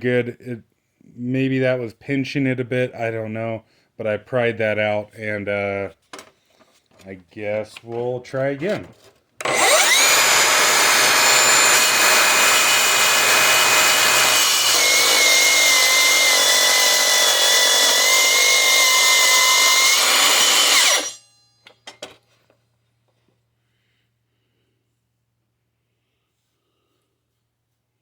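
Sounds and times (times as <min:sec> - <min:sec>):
circular saw cutting steel: 0:09.4 - 0:21.3.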